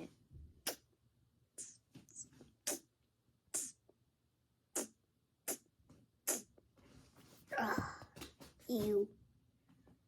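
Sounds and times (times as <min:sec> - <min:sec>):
lips smacking kisses: 0:02.6 - 0:02.9, 0:03.5 - 0:03.8.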